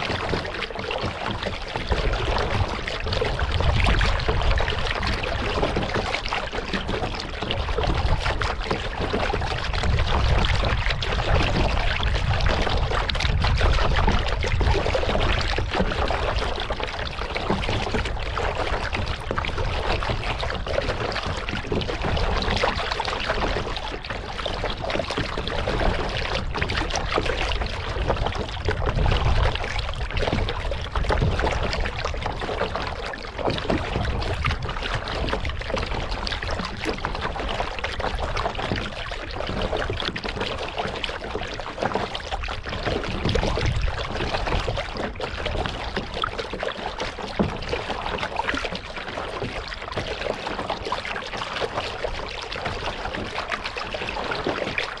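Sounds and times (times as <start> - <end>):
water splashing around kayak: 0.0 - 55.0.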